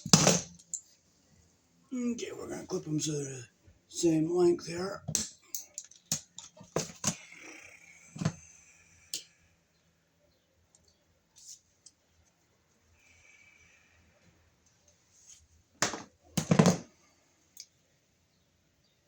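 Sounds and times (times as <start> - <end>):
faint handling sounds: 10.7 - 13.0.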